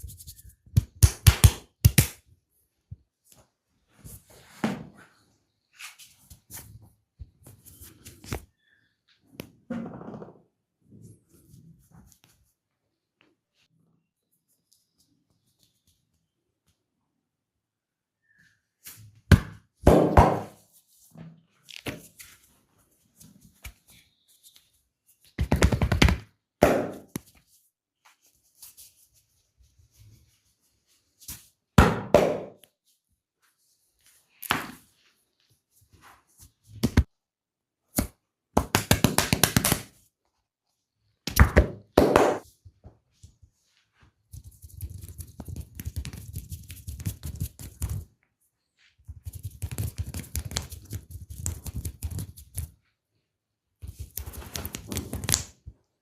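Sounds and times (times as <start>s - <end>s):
hands slapping: 0.7s - 2.2s, 25.4s - 27.4s, 37.9s - 39.9s, 41.3s - 42.4s, 53.8s - 55.6s.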